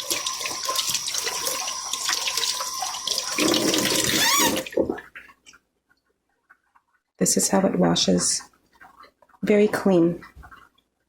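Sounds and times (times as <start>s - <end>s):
water running from a tap: 0.0s - 5.1s.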